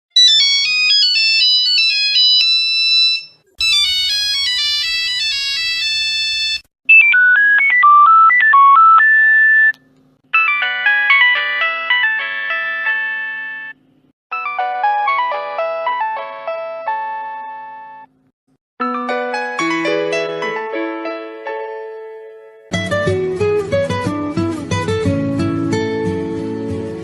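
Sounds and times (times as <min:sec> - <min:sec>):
mobile phone ringtones: 0:00.2 - 0:09.7, 0:10.3 - 0:15.3.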